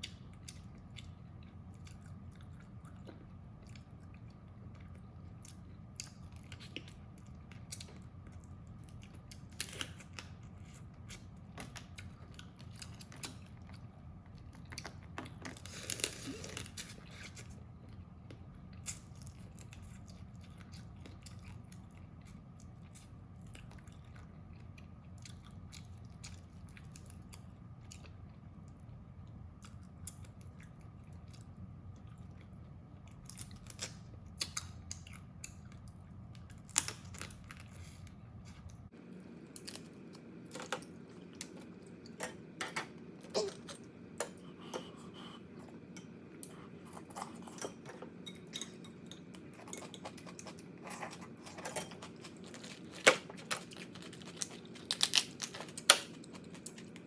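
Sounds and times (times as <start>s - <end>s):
chewing: 0.0s - 57.0s
crab shells cracking: 52.0s - 57.0s.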